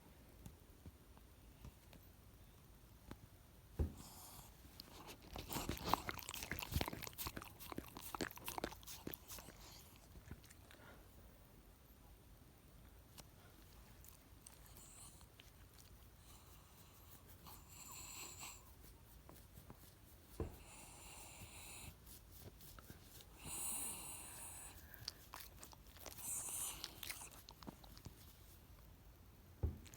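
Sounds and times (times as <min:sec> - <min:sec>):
dog making breathy noises: 0:03.9 - 0:11.0, 0:23.2 - 0:28.0.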